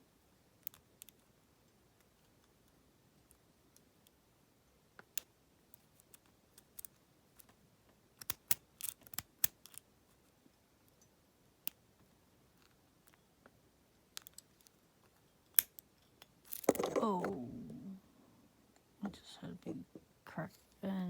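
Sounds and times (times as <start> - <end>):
lock pick metallic clicks: 8.2 - 9.8.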